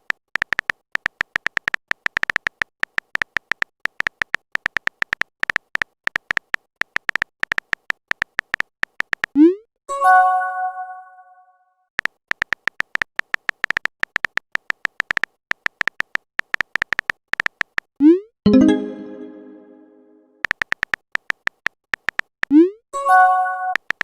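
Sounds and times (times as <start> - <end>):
phone keyboard typing clicks: 0.0 - 9.4, 12.0 - 17.9, 20.4 - 22.4, 23.7 - 24.0
chiming message tone: 18.5 - 20.4, 23.0 - 23.8.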